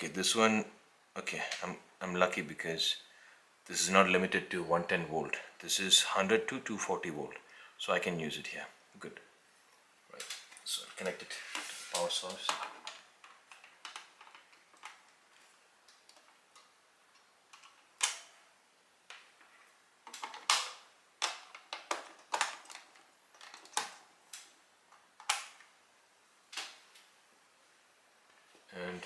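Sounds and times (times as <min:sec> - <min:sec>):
plastic parts clicking: 0:10.2 - 0:18.4, 0:19.1 - 0:25.7.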